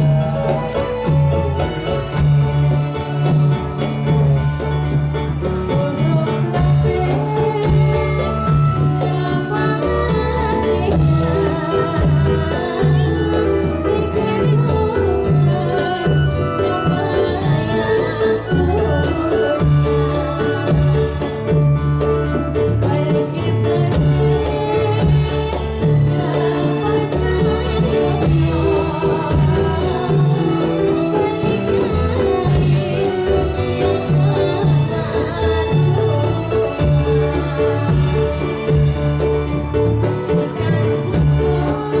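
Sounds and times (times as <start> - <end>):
hand drums beating: 0.0 - 42.0
person singing: 0.0 - 42.0.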